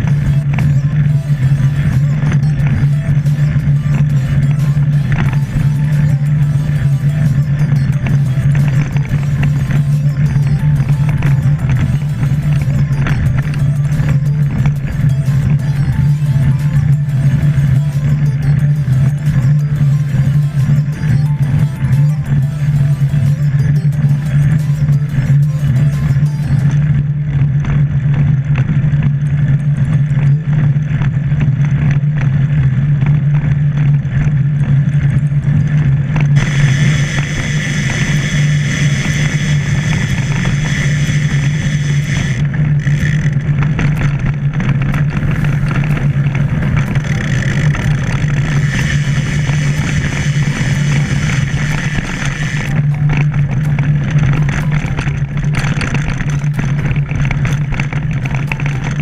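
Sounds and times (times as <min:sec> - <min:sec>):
vehicle engine drone: 0:00.0 - 0:59.0
road and wind hiss: 0:36.4 - 0:43.0, 0:44.9 - 0:54.2.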